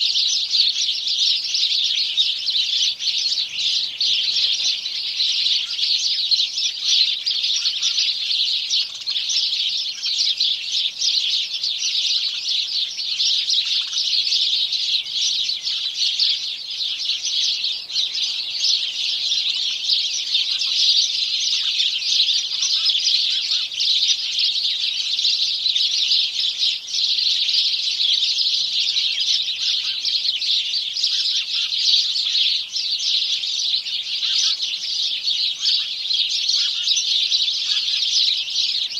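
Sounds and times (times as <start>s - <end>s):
sparrows chirping: 0.0s - 38.9s.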